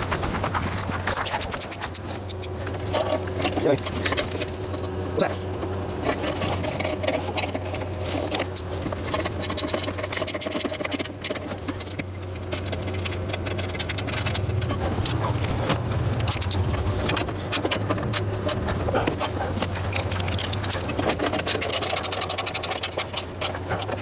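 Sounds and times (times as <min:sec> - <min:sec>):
steady low hum: 0:00.0 - 0:24.0
hand tools clicking on metal: 0:17.5 - 0:24.0.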